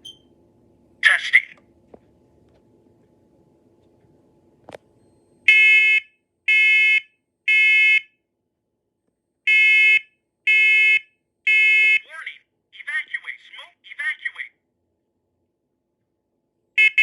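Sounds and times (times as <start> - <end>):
smoke alarm beeps: 0.0 - 0.3.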